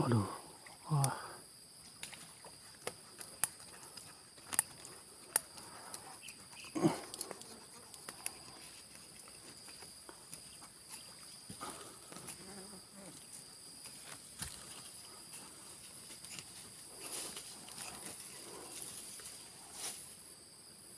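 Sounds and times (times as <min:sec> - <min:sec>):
insects buzzing: 0:00.0 - 0:20.9.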